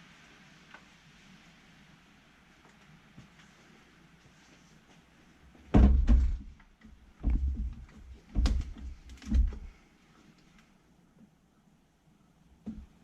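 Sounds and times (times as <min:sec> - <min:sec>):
tools thudding and clunking: 0:05.7 - 0:06.6, 0:07.2 - 0:09.7.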